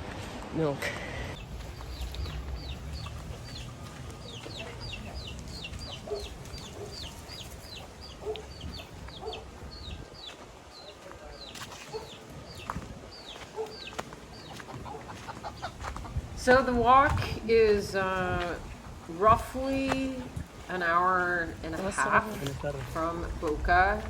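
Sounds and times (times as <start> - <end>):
chickens clucking: 1.3 - 17.4.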